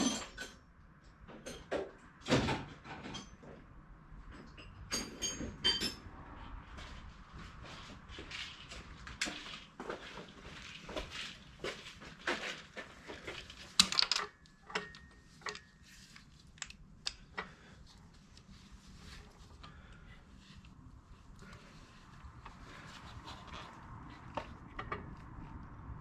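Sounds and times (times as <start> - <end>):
hand tools clinking on metal: 13.0 - 15.9.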